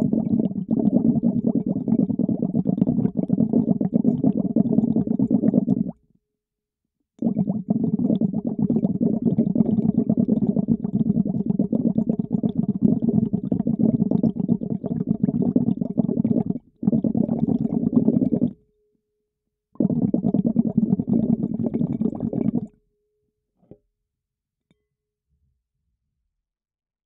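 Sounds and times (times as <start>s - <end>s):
underwater bubbling: 0.0s - 6.0s, 7.2s - 18.6s, 19.8s - 22.7s.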